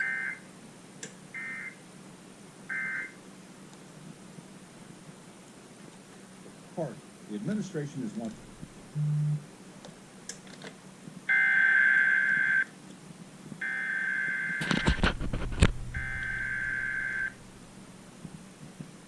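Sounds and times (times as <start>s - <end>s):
loud crackling clicks: 14.6s - 17.4s
warbling digital data tones: 15.9s - 17.4s.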